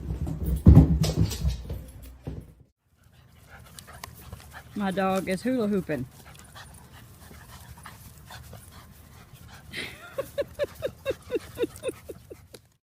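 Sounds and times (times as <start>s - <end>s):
dog panting: 3.0s - 12.7s.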